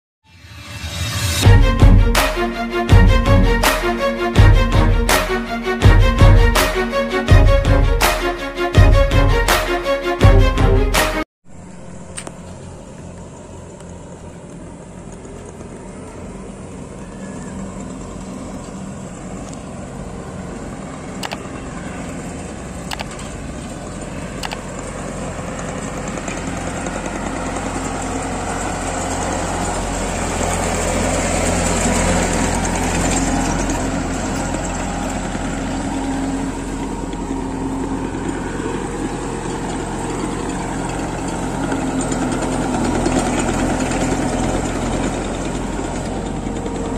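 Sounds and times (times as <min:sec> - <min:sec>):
combine harvester engine running: 0:00.7 - 0:46.9
sharp clicks: 0:21.2 - 0:21.4, 0:22.9 - 0:23.3, 0:24.4 - 0:24.6.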